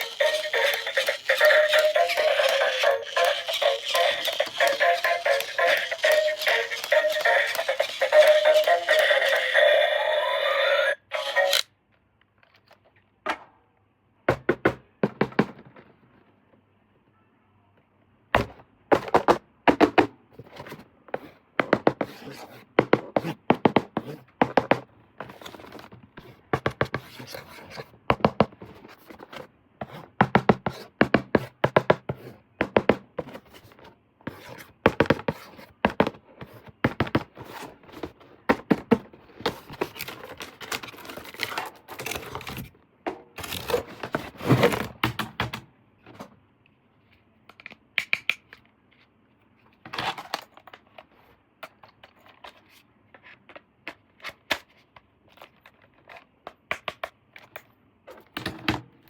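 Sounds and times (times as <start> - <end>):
toy packaging crinkling and tearing: 0.0 - 10.0, 11.0 - 11.6, 39.8 - 42.7.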